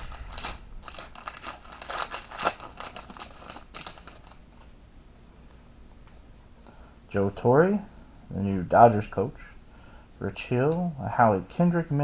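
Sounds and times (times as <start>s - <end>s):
cards and wrapper rustling: 0.0s - 4.4s.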